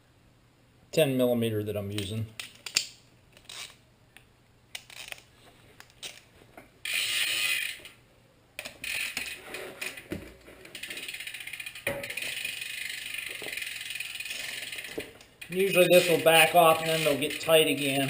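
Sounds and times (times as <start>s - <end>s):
ratchet wrench clicking: 6.8s - 7.9s, 8.6s - 9.4s, 10.7s - 17.8s.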